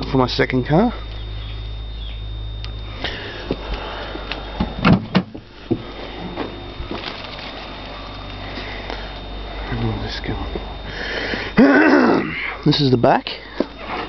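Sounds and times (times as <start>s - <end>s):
car door clicks and clunks: 4.6s - 5.8s.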